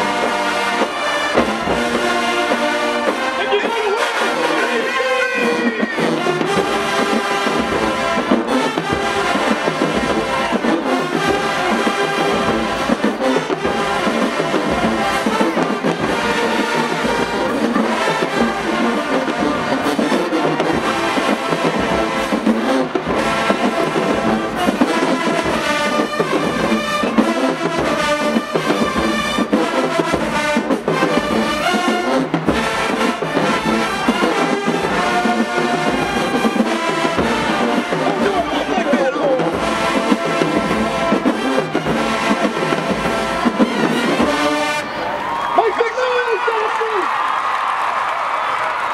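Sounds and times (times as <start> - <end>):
brass section playing: 0.0 - 48.0
drumline percussion: 0.0 - 48.9.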